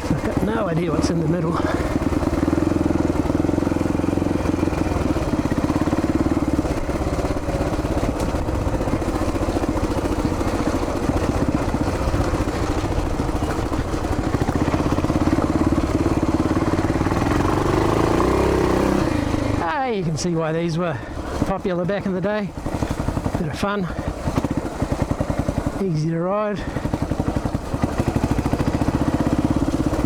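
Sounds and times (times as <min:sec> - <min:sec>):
motorcycle engine running: 0:00.0 - 0:30.0.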